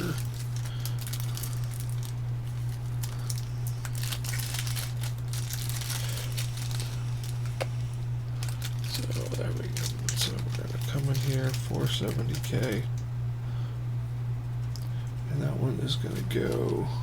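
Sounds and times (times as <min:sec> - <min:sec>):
crinkling and small clicks: 0:00.0 - 0:07.8, 0:08.4 - 0:13.1, 0:14.5 - 0:15.2, 0:16.1 - 0:16.8
low electrical hum: 0:00.0 - 0:17.0.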